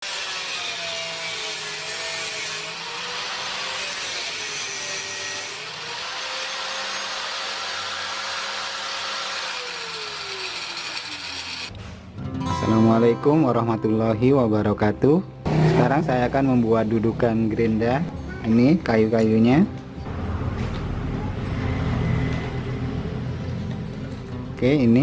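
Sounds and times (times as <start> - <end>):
angle grinder running: 0.0 - 11.7.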